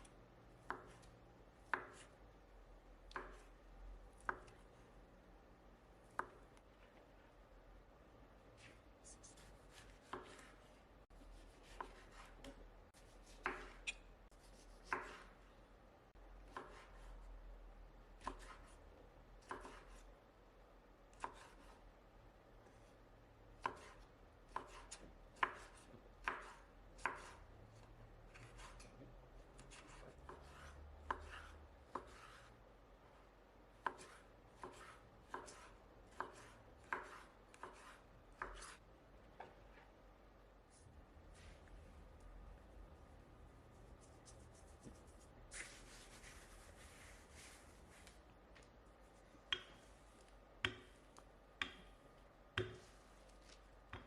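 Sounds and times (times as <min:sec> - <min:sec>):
knife chopping on cutting board: 0:00.6 - 0:02.1, 0:09.4 - 0:10.6, 0:11.3 - 0:14.0, 0:14.8 - 0:15.3, 0:16.5 - 0:17.1, 0:19.4 - 0:20.0, 0:23.6 - 0:27.4, 0:29.6 - 0:32.5, 0:33.8 - 0:38.8, 0:52.5 - 0:52.9.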